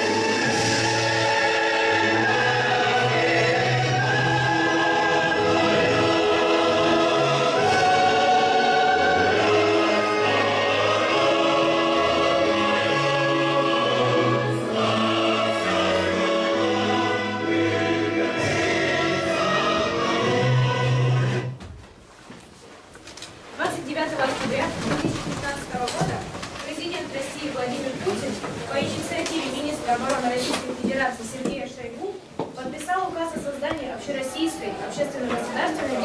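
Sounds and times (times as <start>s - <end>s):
choir singing sustained notes: 0.0s - 21.6s.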